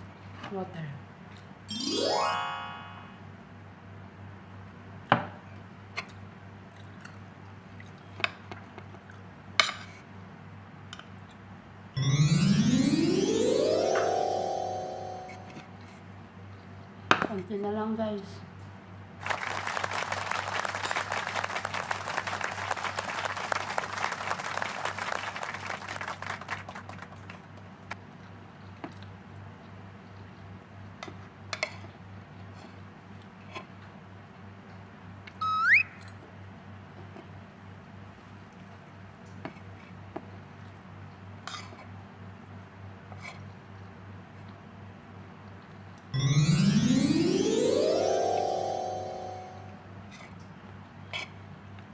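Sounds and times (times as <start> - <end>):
crowd applause: 19.2 - 26.9.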